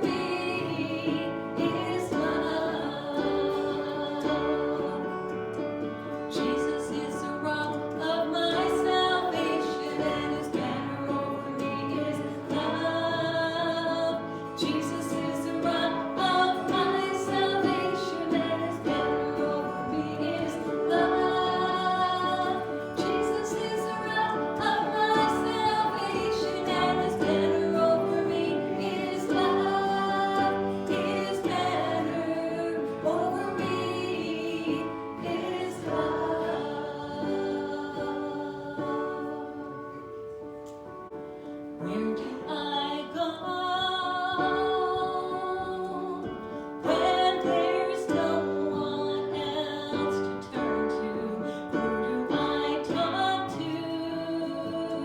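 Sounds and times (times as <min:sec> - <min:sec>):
voices singing worship song: 0:00.0 - 0:40.8, 0:41.7 - 0:55.0
instrumental accompaniment: 0:00.0 - 0:43.0.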